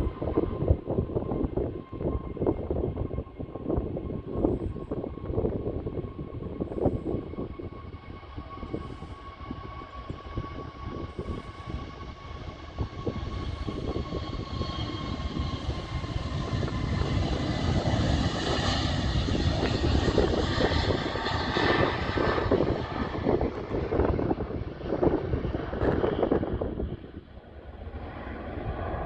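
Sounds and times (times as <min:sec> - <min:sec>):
jet engines whining: 0:00.1 - 0:29.0.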